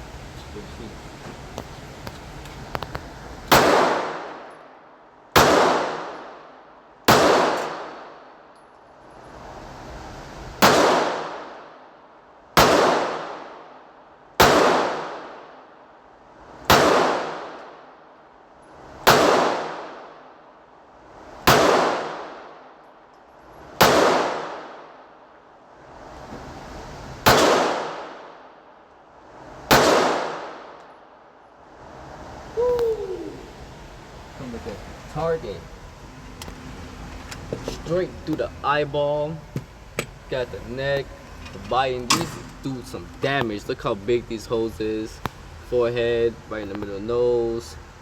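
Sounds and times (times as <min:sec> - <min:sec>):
pistol shots with echo: 0:03.5 - 0:04.5, 0:05.3 - 0:06.5, 0:07.1 - 0:08.2, 0:10.6 - 0:11.7, 0:12.6 - 0:13.7, 0:14.4 - 0:15.5, 0:16.7 - 0:17.8, 0:19.0 - 0:20.2, 0:21.4 - 0:22.6, 0:23.8 - 0:25.2, 0:27.2 - 0:28.5, 0:29.7 - 0:30.8.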